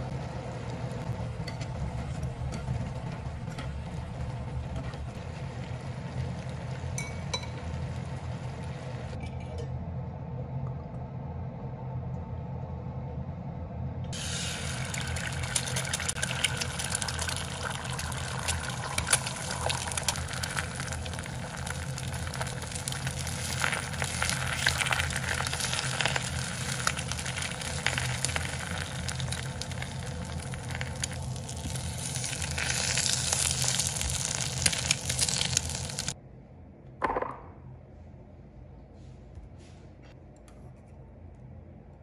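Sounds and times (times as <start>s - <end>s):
low steady hum: 0.0s - 42.0s
food sizzling in a pan: 14.2s - 36.2s.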